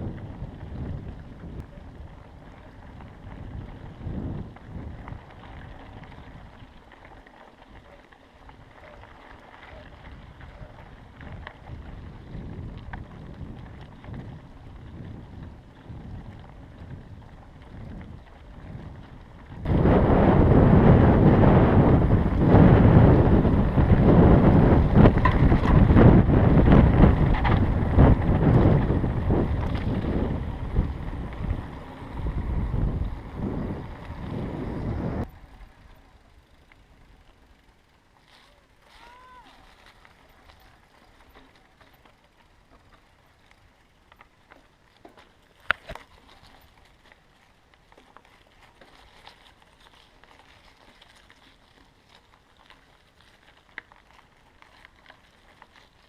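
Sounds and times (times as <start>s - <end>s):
wind buffeting microphone: 0.0s - 6.7s, 9.7s - 36.6s.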